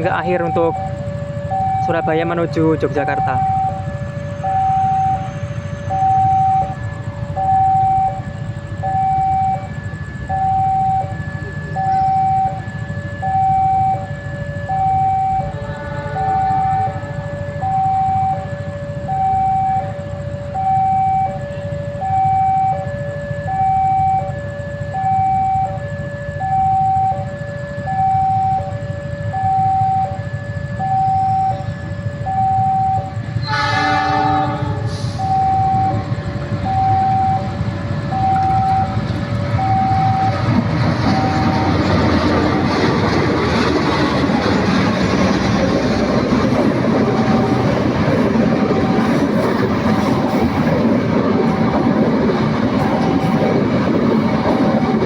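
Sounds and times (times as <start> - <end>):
level crossing two-tone alarm: 0.0 - 55.0
steady low rumble: 34.4 - 55.0.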